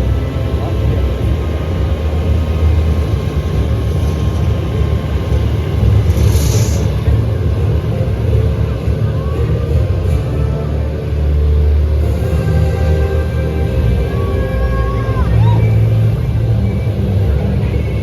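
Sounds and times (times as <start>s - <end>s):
excavator engine rumble: 0.0s - 18.0s
brief hiss: 6.1s - 7.0s.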